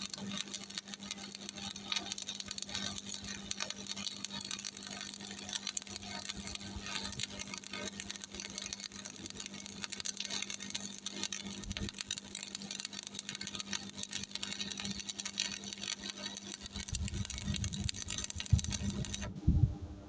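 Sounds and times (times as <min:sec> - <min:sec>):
welding arc crackling: 0:00.0 - 0:19.5
low hum: 0:17.1 - 0:20.0.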